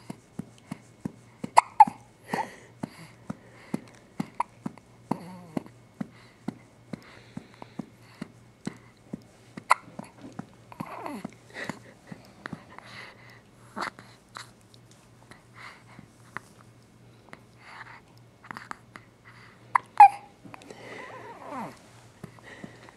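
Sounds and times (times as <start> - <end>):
baby hiccuping: 1.6 - 2.1, 9.7 - 10.0, 19.7 - 20.3.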